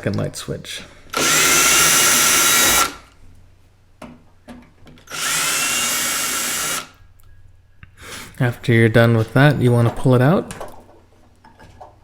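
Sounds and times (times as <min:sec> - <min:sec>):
power drill whine: 0:01.1 - 0:03.0, 0:05.1 - 0:07.0.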